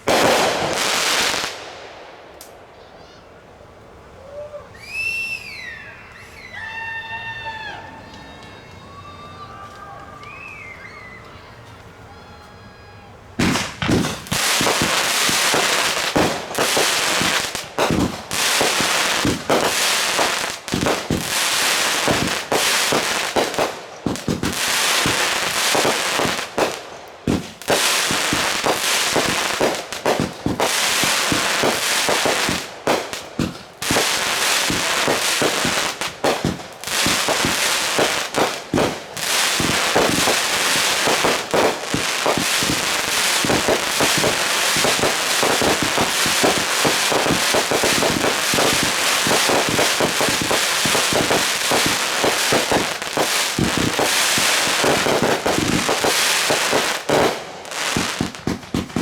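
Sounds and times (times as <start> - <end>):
fireworks bangs and crackling: 0.0 - 3.2, 13.4 - 59.0.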